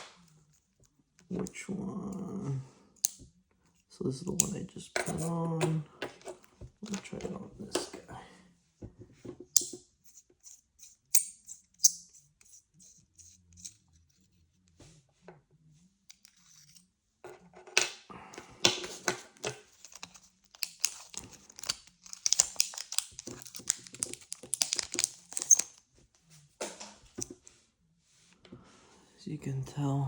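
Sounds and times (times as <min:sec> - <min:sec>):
crinkling and scratching: 0:03.6 - 0:08.1, 0:16.1 - 0:27.6
pen clicks: 0:18.8 - 0:25.7.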